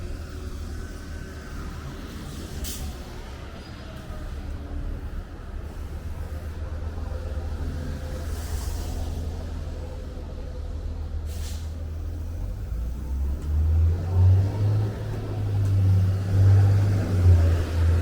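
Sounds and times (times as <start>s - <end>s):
heavy vehicle approaching: 0.0s - 18.0s
street traffic rumble: 0.0s - 18.0s.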